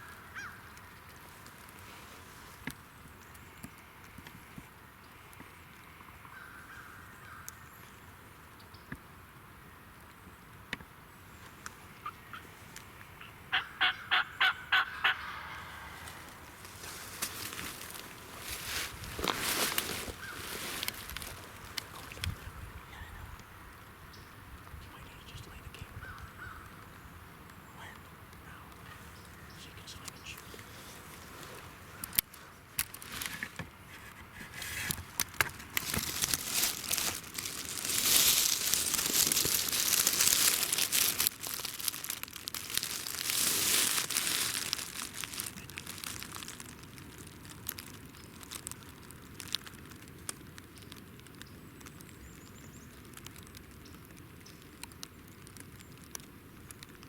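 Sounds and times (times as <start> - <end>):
faint hiss: 15.6 - 35.2.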